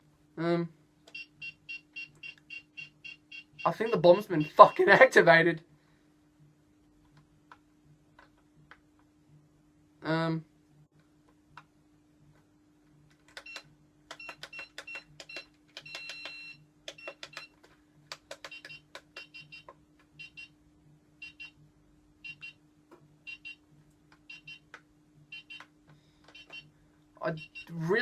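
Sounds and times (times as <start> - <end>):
faint steady hum: 0.0 - 28.0
small sharp clicks: 13.1 - 19.8.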